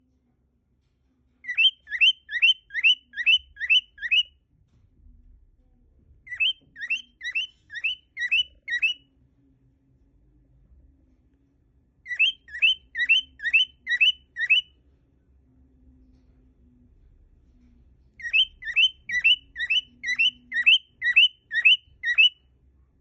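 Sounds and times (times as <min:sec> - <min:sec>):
cockatiel whistling: 0:01.5 - 0:04.3, 0:06.3 - 0:09.0, 0:12.1 - 0:14.7, 0:18.2 - 0:22.4.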